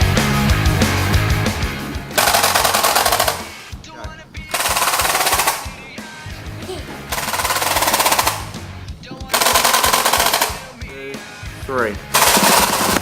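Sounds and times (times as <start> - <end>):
background music with steady beat: 0.0 - 13.0
automatic gunfire bursts: 2.2 - 3.6, 4.5 - 5.9, 7.1 - 8.6, 9.3 - 10.8, 12.1 - 13.0.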